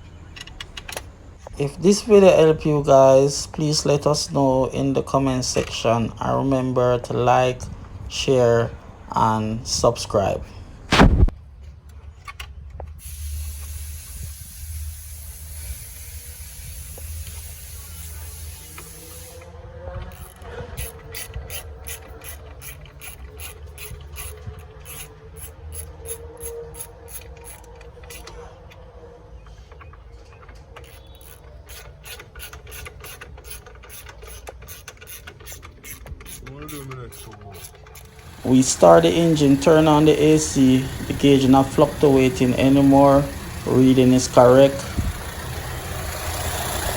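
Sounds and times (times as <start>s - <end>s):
mechanical ratchet clicking: 13.0s - 19.5s, 20.1s - 28.4s, 30.8s - 46.9s
steady hiss: 13.0s - 19.5s.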